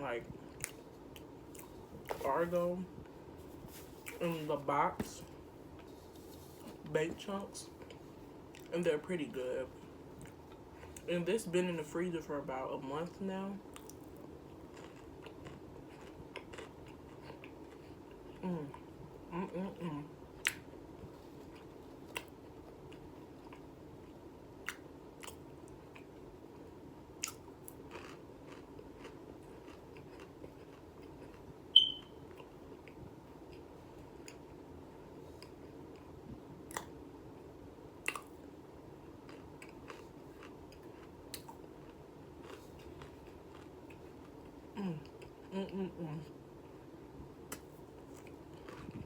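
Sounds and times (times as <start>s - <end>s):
chewing crunchy food: 0.2s - 6.8s, 7.7s - 8.7s, 13.1s - 34.6s, 38.0s - 45.8s, 47.5s - 49.0s.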